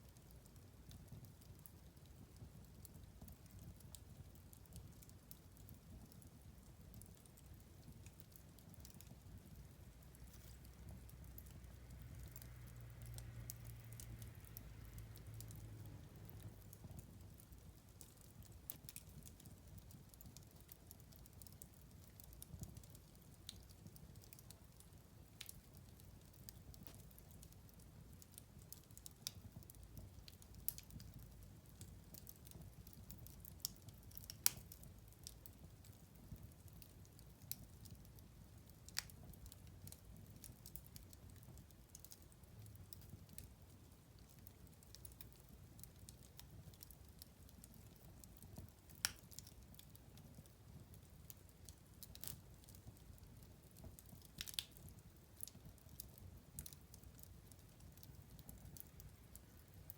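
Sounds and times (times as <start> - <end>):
low rumble of flames: 0.0 - 59.9
wood fire crackling: 0.0 - 59.9
fire pops and snaps: 16.3 - 59.9.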